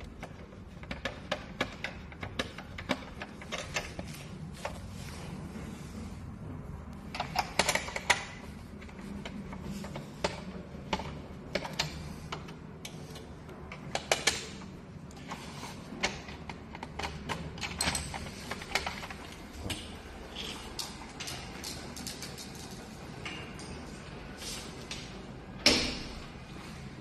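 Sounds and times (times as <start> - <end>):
hand tools clicking and knocking: 0.0 - 4.8
steady low hum: 0.0 - 27.0.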